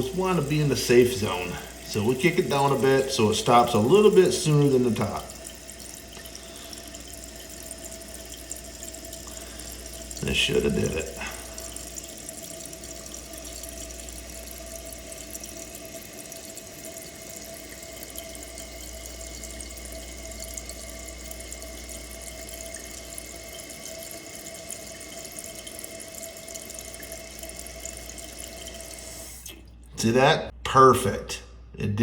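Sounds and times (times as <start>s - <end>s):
toilet tank refilling hiss: 0.0s - 29.7s.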